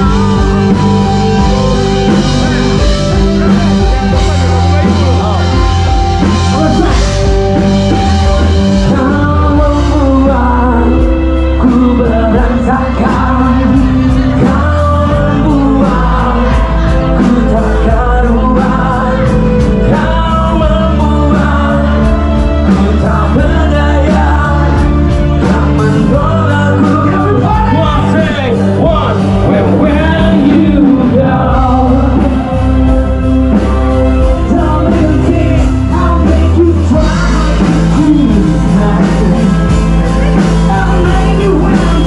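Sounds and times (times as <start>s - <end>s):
drums steady beat: 0.0s - 42.0s
lead vocal singing: 0.0s - 42.0s
rock band playing: 0.0s - 42.0s.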